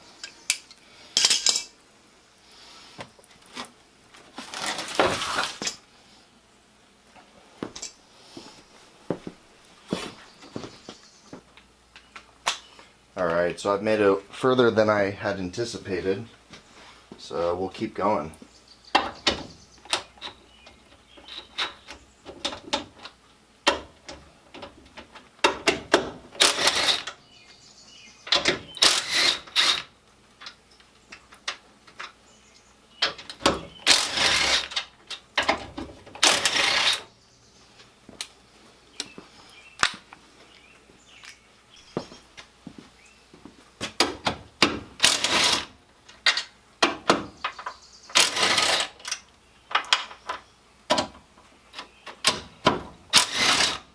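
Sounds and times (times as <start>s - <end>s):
hand tools clicking and clanking: 0.2s - 1.8s, 19.0s - 27.2s, 28.2s - 32.2s, 33.0s - 37.1s, 43.9s - 53.9s
louder tool bursts: 26.4s - 27.1s, 28.7s - 29.9s, 33.8s - 34.8s, 36.2s - 37.1s, 45.0s - 45.7s, 48.1s - 49.0s, 53.1s - 53.9s.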